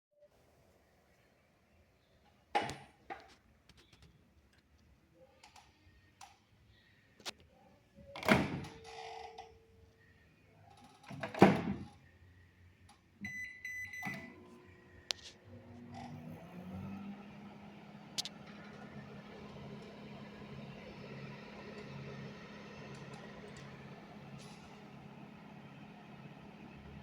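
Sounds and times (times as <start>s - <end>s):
high microwave beep: 13.2s - 14.4s.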